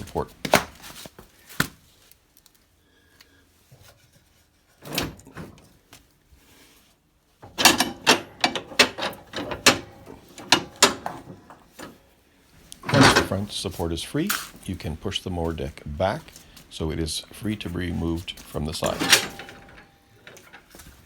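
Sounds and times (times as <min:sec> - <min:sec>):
metal mower deck clattering: 0:07.4 - 0:12.0, 0:12.7 - 0:13.8, 0:18.5 - 0:21.0
metal clanks and scraping: 0:07.4 - 0:14.7, 0:17.9 - 0:21.0.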